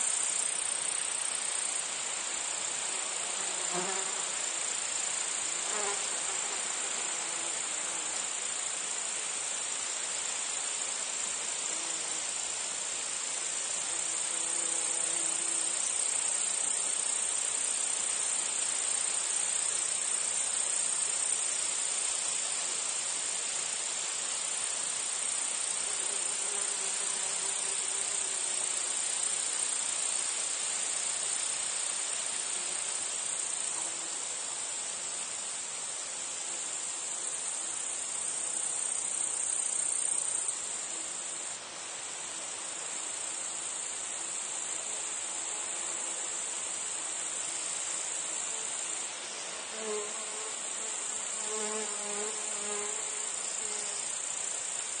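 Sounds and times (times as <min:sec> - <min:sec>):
cicadas and crickets trilling: 0:00.0 - 0:55.0
flies buzzing: 0:49.5 - 0:54.1.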